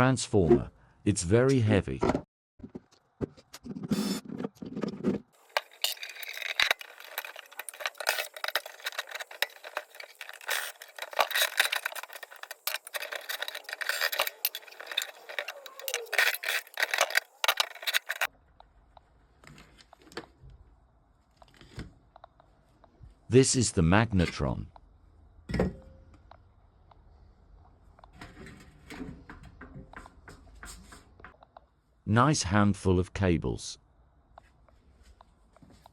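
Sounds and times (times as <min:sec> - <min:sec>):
metal parts clinking and rattling: 0:05.3 - 0:18.3.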